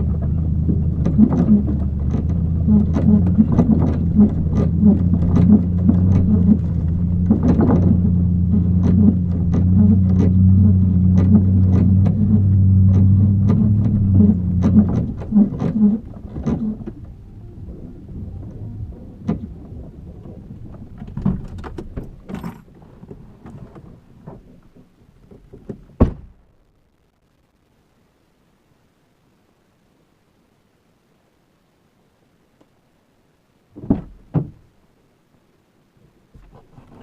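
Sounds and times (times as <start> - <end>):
engine running: 0.0 - 24.8.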